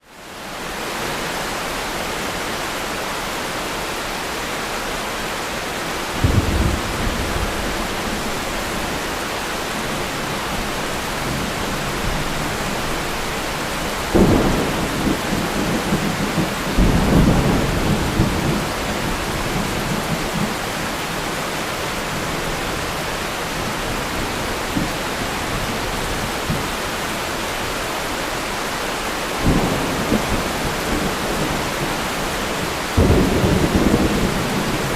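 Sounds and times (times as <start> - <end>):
steady rain falling: 0.0 - 34.9
thunder rumbling: 6.1 - 21.1, 29.4 - 34.9.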